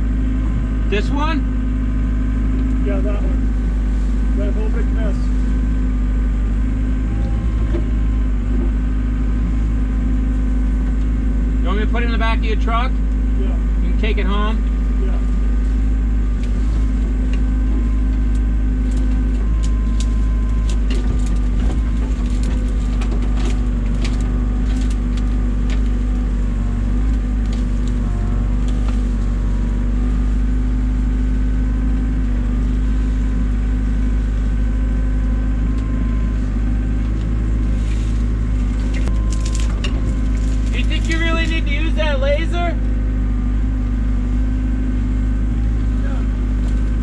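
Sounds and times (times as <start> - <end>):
excavator diesel engine running: 0.0 - 47.0.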